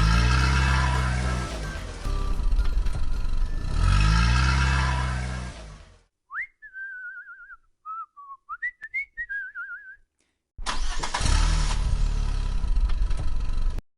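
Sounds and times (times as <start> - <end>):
vehicle engine rumbling: 0.0 - 6.1, 10.6 - 13.8.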